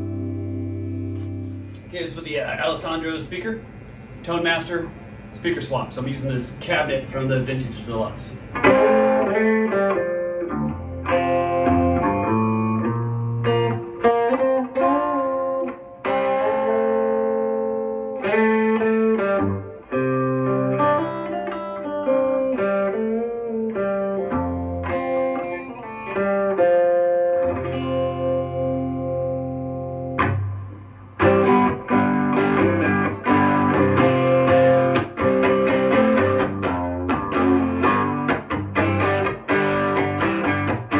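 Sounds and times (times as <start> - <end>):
bass notes: 0.0 - 1.9, 10.5 - 14.0, 27.8 - 40.9
electric guitar chords and lines: 0.0 - 2.2, 8.3 - 40.9.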